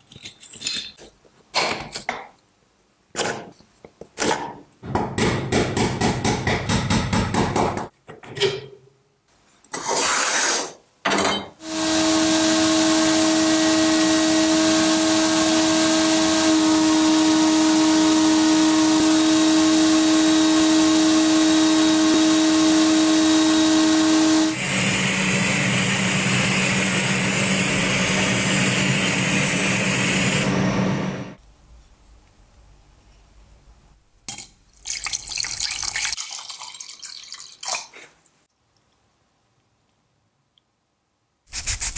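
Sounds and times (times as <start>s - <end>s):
electric power tool running: 11.6s - 31.4s
hissing machine noise: 11.6s - 31.4s.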